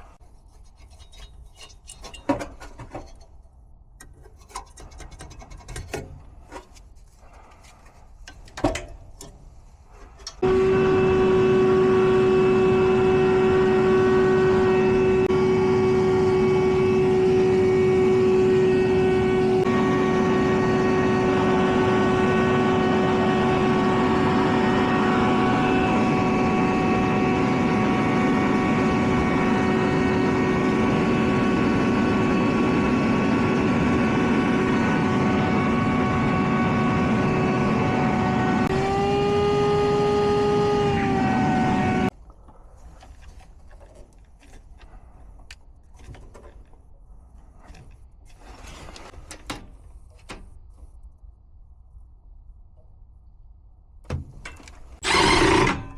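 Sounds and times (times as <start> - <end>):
machine humming: 10.4 - 42.1, 55.0 - 55.9.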